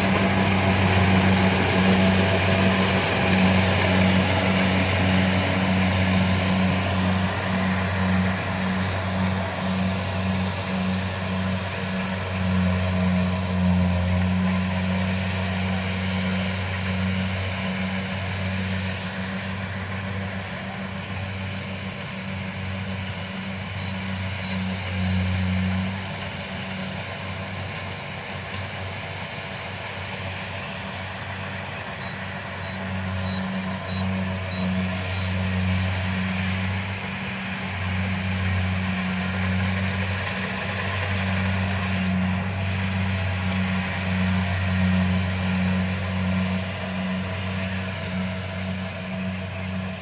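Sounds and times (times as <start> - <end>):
diesel engine droning: 0.0 - 50.0.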